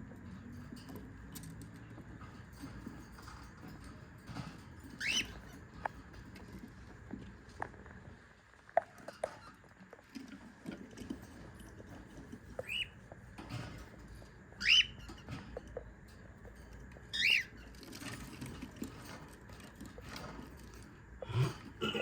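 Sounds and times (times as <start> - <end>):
light scratching and tapping: 0.0 - 21.8
cockatiel calling: 5.0 - 5.4, 12.6 - 13.0, 14.6 - 15.1, 17.1 - 17.5.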